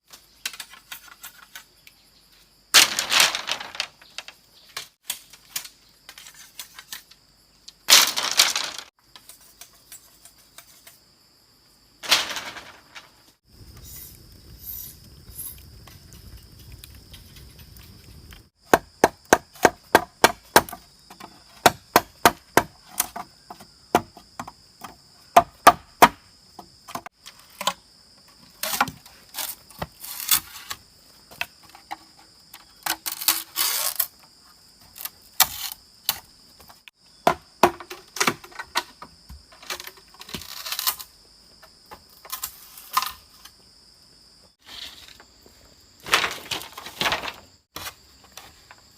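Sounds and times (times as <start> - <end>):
blade chopping wood: 18.7 - 23.3.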